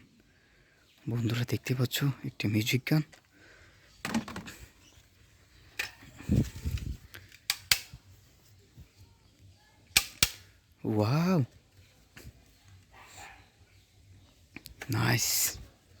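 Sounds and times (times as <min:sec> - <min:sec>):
toy gun plastic clicks: 0:07.1 - 0:08.0, 0:09.9 - 0:10.6.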